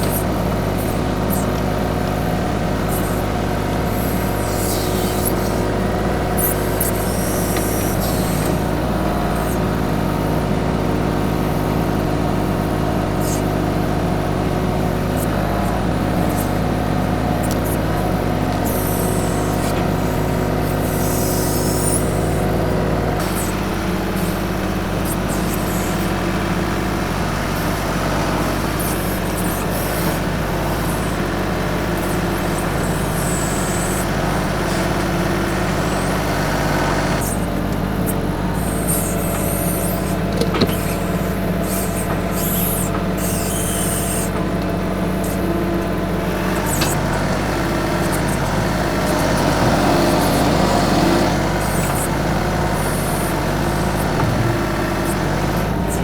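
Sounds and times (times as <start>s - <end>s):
tractor diesel engine running: 0.0s - 56.0s.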